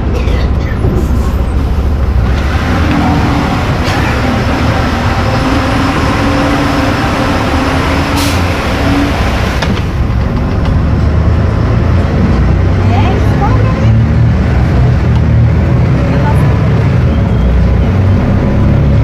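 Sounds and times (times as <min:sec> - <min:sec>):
bus engine deep rumble: 0:00.0 - 0:19.0
steady whine: 0:01.3 - 0:10.6.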